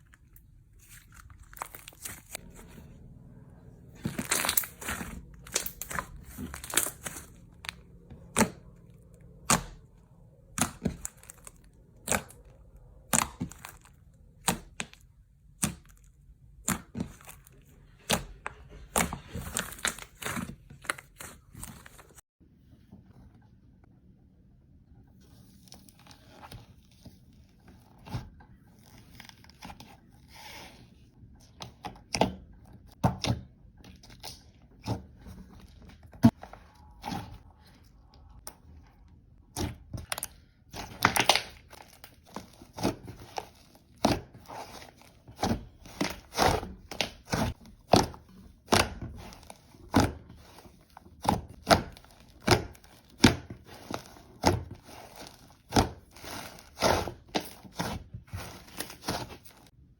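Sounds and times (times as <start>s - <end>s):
crisp crunching by hand: 0.0s - 2.9s, 3.9s - 9.8s, 10.6s - 15.0s, 48.8s - 59.7s.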